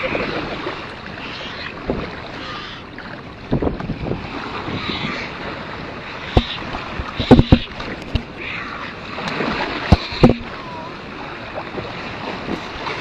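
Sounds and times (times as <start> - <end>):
surf washing: 0.0 - 13.0
wind buffeting microphone: 3.2 - 13.0.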